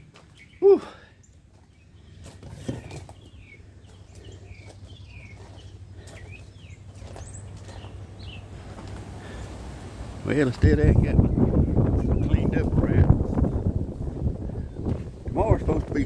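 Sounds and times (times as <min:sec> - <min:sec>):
birds chirping: 0:00.0 - 0:16.0
steady low rumble: 0:05.0 - 0:16.0.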